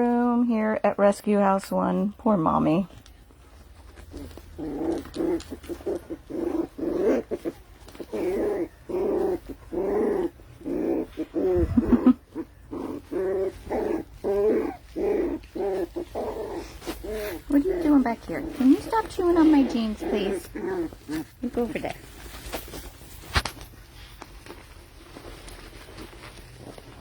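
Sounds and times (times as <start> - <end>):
dog whining barks and yelps: 4.2 - 21.3.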